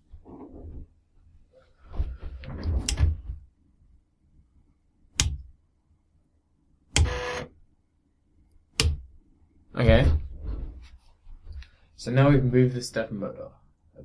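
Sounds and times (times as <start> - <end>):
sharp click: 5.2 - 5.4.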